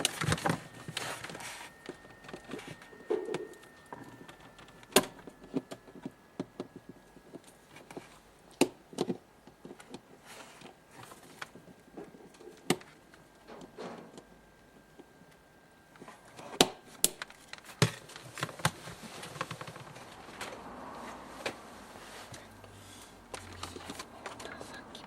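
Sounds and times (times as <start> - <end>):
faint high tone: 0.0 - 7.2.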